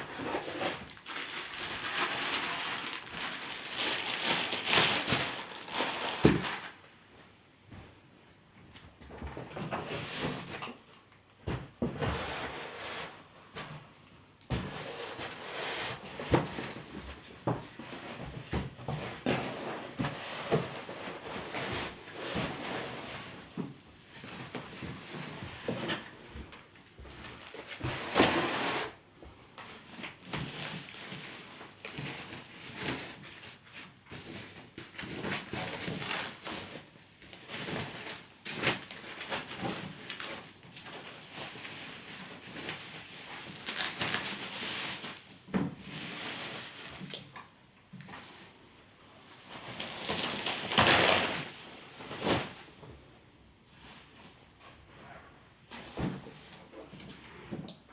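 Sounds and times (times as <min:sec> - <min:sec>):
packaging scraping: 0:00.0 - 0:06.8
packaging rustling: 0:00.1 - 0:06.8, 0:43.4 - 0:45.2.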